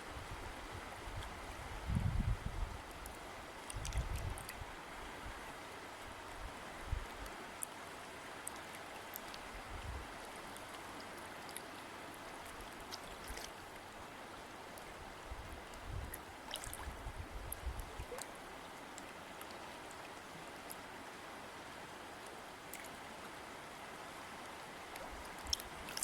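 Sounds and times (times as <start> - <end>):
small splashes and drips: 2.9 - 4.6, 7.0 - 14.0, 15.7 - 20.9, 22.2 - 23.1, 24.4 - 26.0
river water rushing: 4.5 - 26.0.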